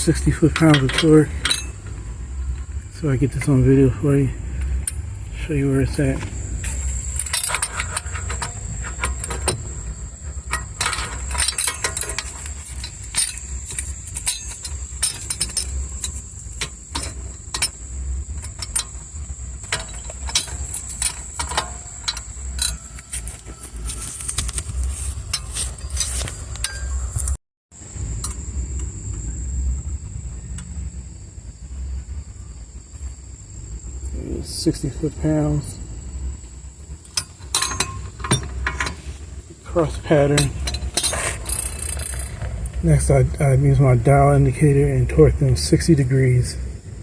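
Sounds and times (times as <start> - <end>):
steady low rumble: 0.0 - 47.0.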